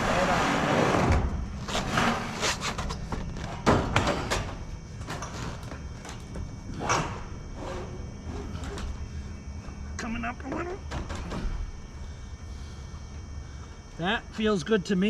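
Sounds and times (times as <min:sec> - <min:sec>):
metal roofing panel scraping: 0:00.0 - 0:03.6.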